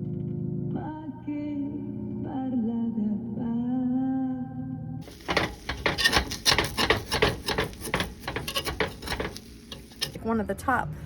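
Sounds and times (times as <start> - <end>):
food sizzling in a frying pan: 5.0 - 10.2
stirring clicks: 5.0 - 10.2.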